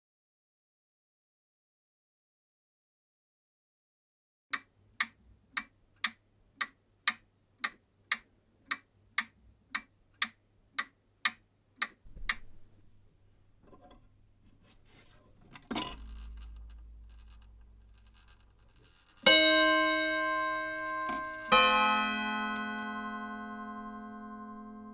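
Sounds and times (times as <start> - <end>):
mechanical clock ticking: 4.6 - 14.1, 15.1 - 22.9
clock mechanism rumbling and clunking: 11.8 - 21.9
clock gong ringing: 19.3 - 24.9.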